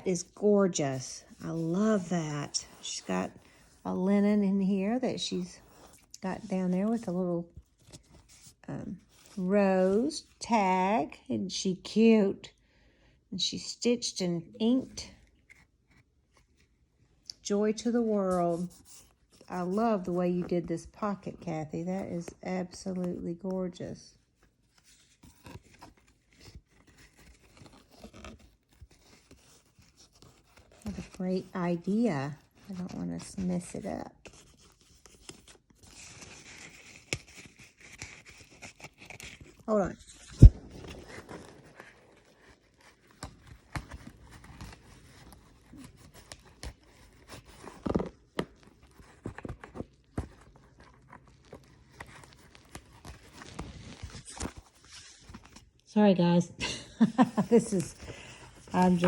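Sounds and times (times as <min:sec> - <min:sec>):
paper rustling and crinkling: 0:00.0 - 0:10.3, 0:24.0 - 0:55.8, 0:57.0 - 0:59.0
paper rustling and tapping: 0:57.8 - 0:59.0.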